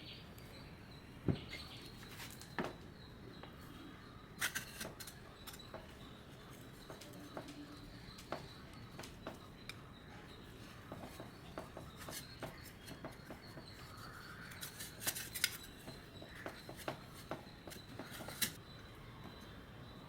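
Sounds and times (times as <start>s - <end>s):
metal spatulas scraping cold plate: 4.4s - 5.7s, 11.9s - 18.6s.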